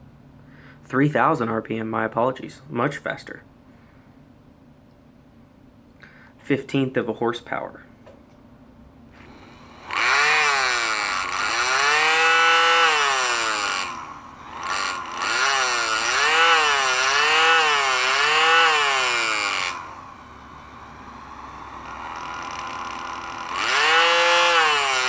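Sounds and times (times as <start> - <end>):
electric motor whining: 9.2 - 25.0.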